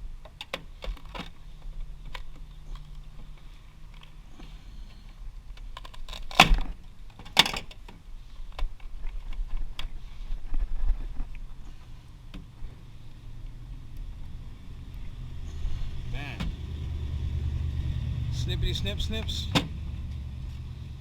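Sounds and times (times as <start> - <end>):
small metal clicks and rattles: 0.2 - 4.2, 4.8 - 10.0.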